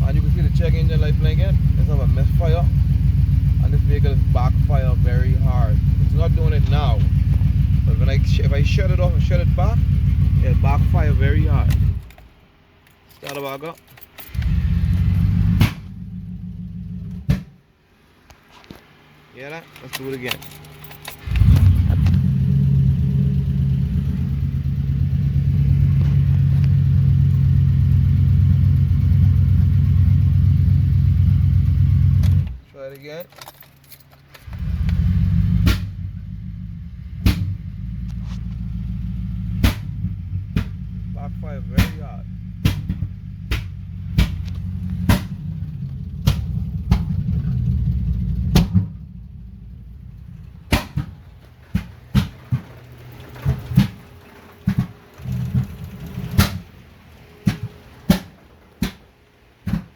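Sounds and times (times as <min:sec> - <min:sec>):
engine running with misfire: 0:00.0 - 0:12.3, 0:13.9 - 0:17.6, 0:19.5 - 0:32.6, 0:33.3 - 0:59.9
loud backfire pops: 0:15.6 - 0:16.0, 0:39.6 - 0:40.8, 0:50.7 - 0:52.7.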